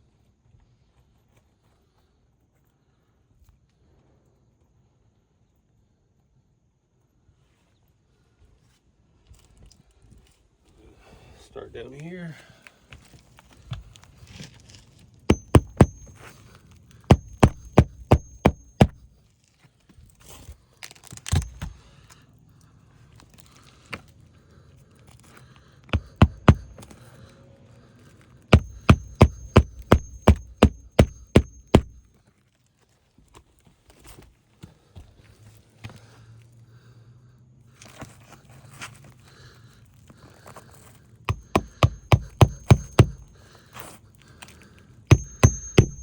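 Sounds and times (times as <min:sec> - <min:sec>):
hammer driving roofing nails: 0:15.3 - 0:16.3, 0:17.1 - 0:19.1, 0:21.3 - 0:21.7, 0:26.0 - 0:26.9, 0:28.5 - 0:32.0, 0:41.3 - 0:43.4, 0:45.1 - 0:46.0.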